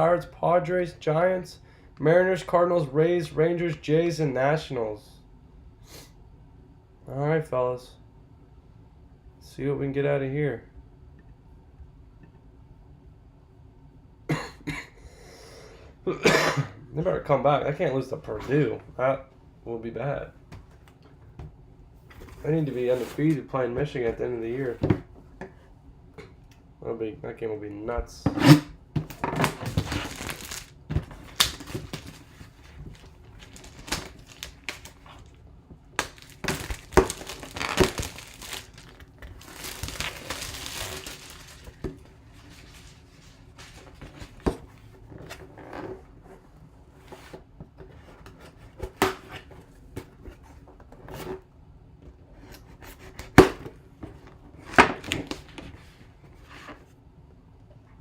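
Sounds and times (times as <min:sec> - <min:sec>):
plastic crinkling and tearing: 0:29.4 - 0:35.4, 0:36.0 - 0:43.9.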